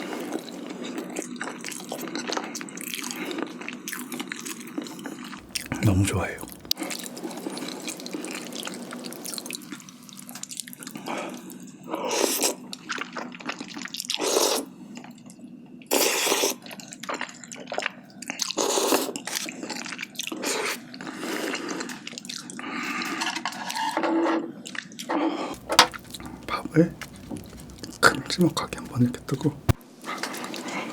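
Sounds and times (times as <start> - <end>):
wet chewing and mouth sounds: 0.0 - 11.0, 21.8 - 22.5, 25.6 - 30.9.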